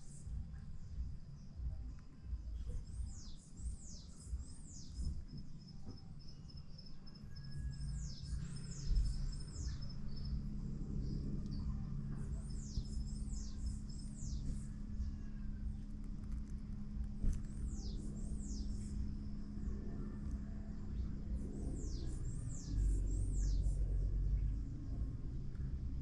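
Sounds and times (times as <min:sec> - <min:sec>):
pulsing insect trill: 0:03.0 - 0:15.9.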